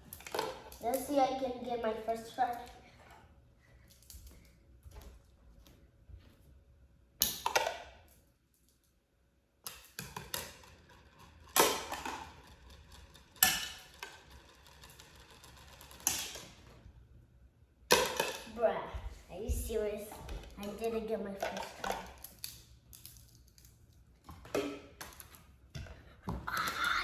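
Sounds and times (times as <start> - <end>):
hard objects clacking and rattling: 9.7 - 16.7, 20.2 - 25.4.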